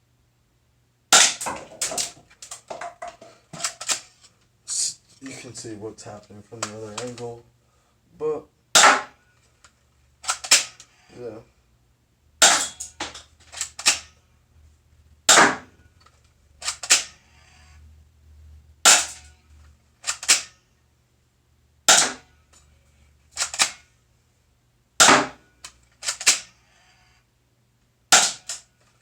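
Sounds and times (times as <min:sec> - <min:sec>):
airsoft gun shots snapping: 0:08.8 - 0:09.2, 0:10.2 - 0:10.8, 0:15.3 - 0:15.7, 0:16.6 - 0:17.2, 0:20.0 - 0:20.6, 0:21.9 - 0:22.3, 0:25.0 - 0:25.4, 0:26.0 - 0:26.5, 0:28.1 - 0:28.6.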